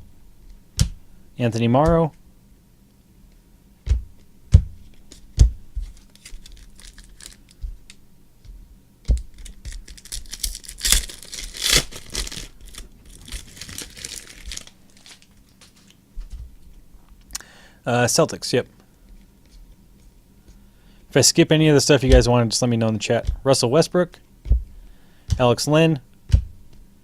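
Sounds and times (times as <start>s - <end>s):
wrapper tearing and crinkling: 6.0s - 7.6s, 9.4s - 15.9s.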